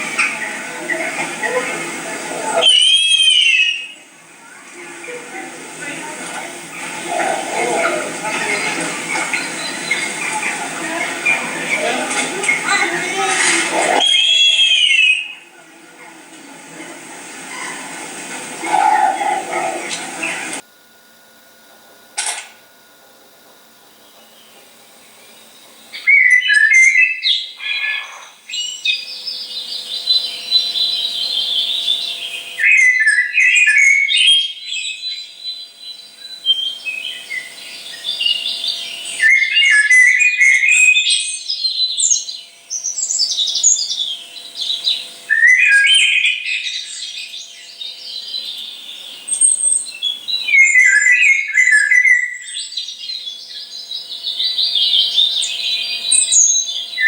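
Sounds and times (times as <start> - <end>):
owl calls through speaker: 0.0 - 4.0, 4.6 - 16.1, 17.5 - 20.6.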